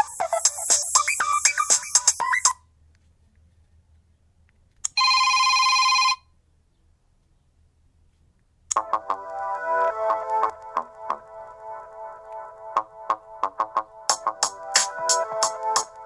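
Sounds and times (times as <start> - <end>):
buzzy telephone bell ring: 5.0 - 6.2
electronic ringtone: 5.0 - 6.3.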